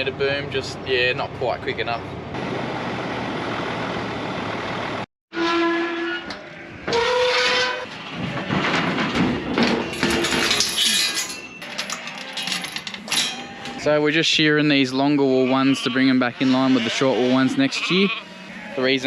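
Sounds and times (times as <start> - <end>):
steady wind or vehicle noise: 0.0 - 5.1
livestock calling: 15.3 - 19.0.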